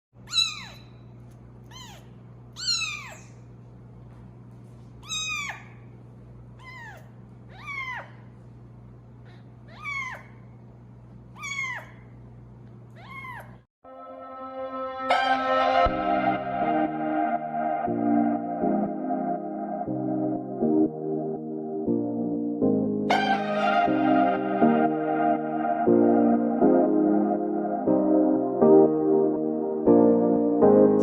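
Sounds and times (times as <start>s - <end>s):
kitten meowing: 0.2s - 0.9s, 1.7s - 3.4s, 5.0s - 5.8s, 6.6s - 8.2s, 9.6s - 10.4s, 11.4s - 12.0s, 13.0s - 13.6s
music: 13.8s - 31.0s
steady low hum: 14.4s - 31.0s.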